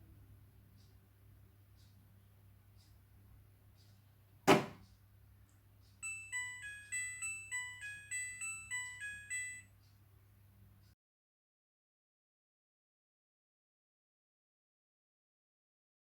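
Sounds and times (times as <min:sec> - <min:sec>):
washing machine clack: 0:04.5 - 0:04.8.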